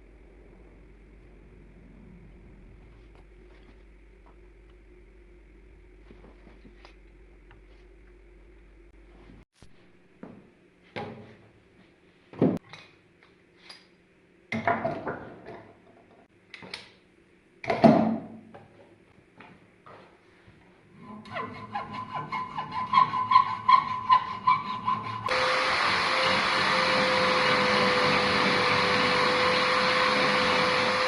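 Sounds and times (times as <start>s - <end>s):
rasping strokes: 21.0s - 31.0s.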